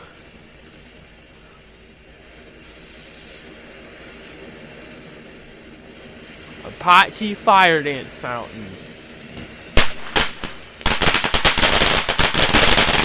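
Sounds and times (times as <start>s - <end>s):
firework fountain hissing: 0.0s - 13.0s
high falling whistle: 2.6s - 3.8s.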